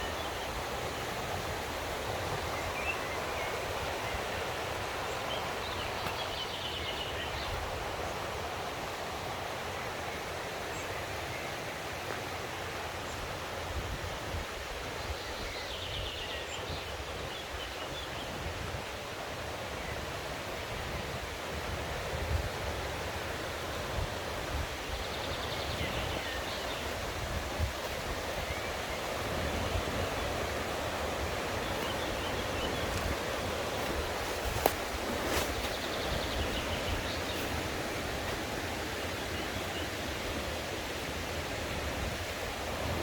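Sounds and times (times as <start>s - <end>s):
stream rushing over rocks: 0.0s - 15.0s, 18.4s - 43.0s.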